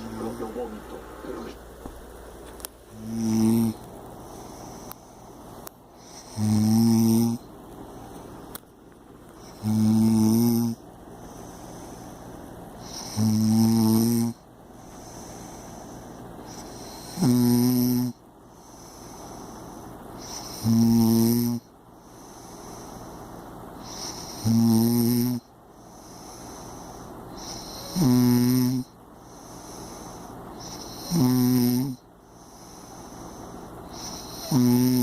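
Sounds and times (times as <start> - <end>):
quiet breathing: 0.0 - 35.0
person snoring loudly: 2.9 - 3.8, 6.0 - 7.5, 9.5 - 10.8, 12.8 - 14.4, 16.5 - 18.2, 20.2 - 21.7, 23.8 - 25.5, 27.3 - 28.9, 30.6 - 32.0, 33.9 - 35.0.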